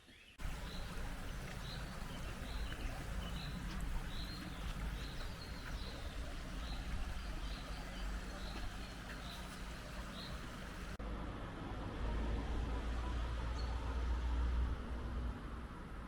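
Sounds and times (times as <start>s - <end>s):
wind rumbling on microphone: 0.4s - 11.0s.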